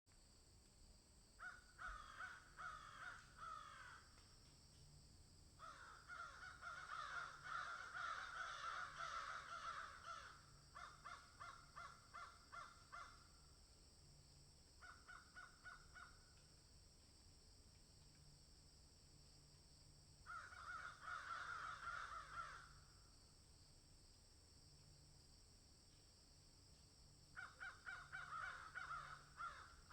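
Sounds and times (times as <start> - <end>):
crows cawing: 1.4 - 4.1, 5.6 - 13.3, 14.8 - 16.2, 20.2 - 22.9, 27.4 - 29.9.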